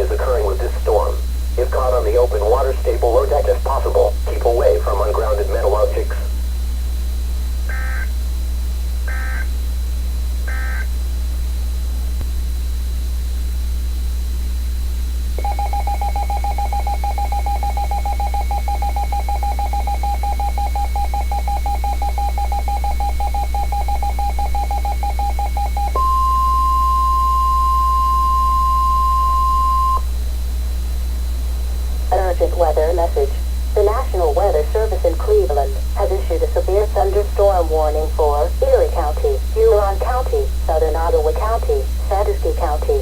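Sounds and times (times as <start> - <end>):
pulsing data tone: 0.0 - 11.1, 15.3 - 30.2
steady warning alarm tone: 0.0 - 11.2, 15.4 - 43.0
receiver low hum: 0.0 - 43.0
short data bursts: 7.7 - 8.2, 9.0 - 9.6, 10.5 - 10.9.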